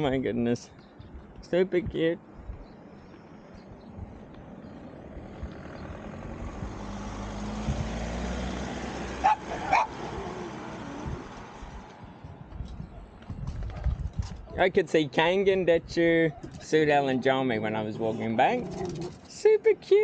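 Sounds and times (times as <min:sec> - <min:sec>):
vehicle passing by: 0:04.0 - 0:12.5
dog barking: 0:09.2 - 0:10.0.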